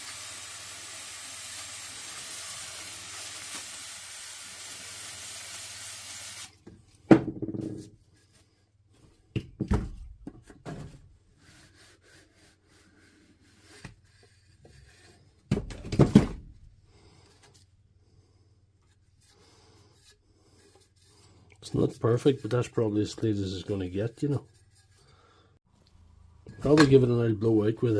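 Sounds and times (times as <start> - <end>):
aerosol can spraying: 0.0 - 6.6.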